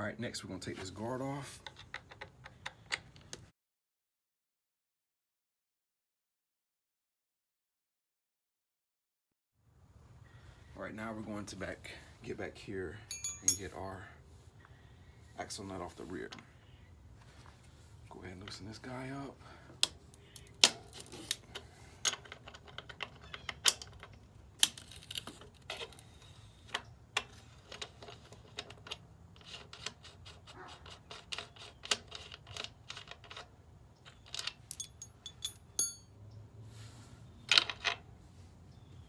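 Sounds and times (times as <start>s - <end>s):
ringing metal clinks: 13.1s - 13.8s, 34.7s - 36.2s
wrench clicking on metal nut: 13.1s - 13.8s.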